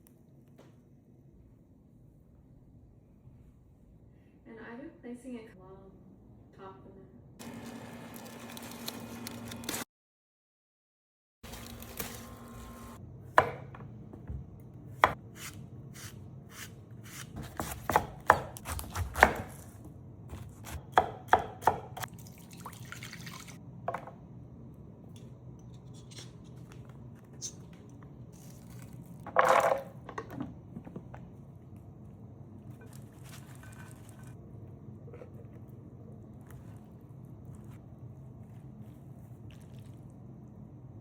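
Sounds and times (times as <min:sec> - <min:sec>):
knife chopping on cutting board: 0:13.4 - 0:13.9, 0:15.0 - 0:19.7, 0:20.3 - 0:22.1.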